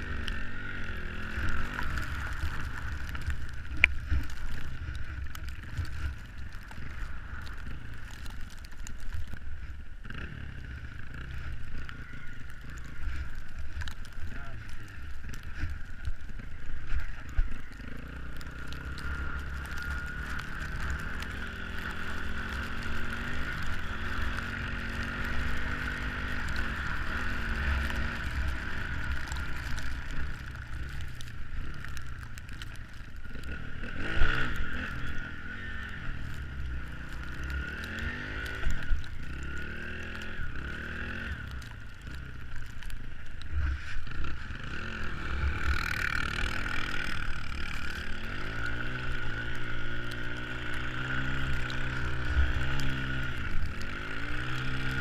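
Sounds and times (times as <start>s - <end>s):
off-road vehicle engine revving: 17.8s - 32.5s, 33.3s - 42.2s, 43.6s - 55.0s.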